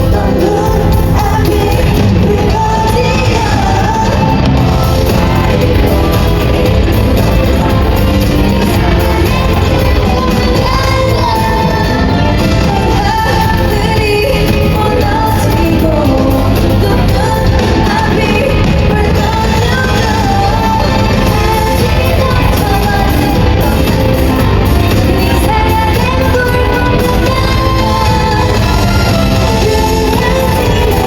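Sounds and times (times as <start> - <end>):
female group singing: 0.0 - 31.0
pop backing track with beat: 0.0 - 31.0.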